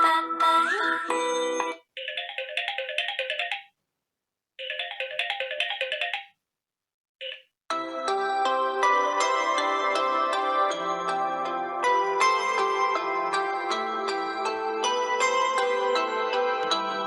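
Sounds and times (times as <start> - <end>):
phone ringtone melody: 1.5 - 3.7, 4.6 - 6.4.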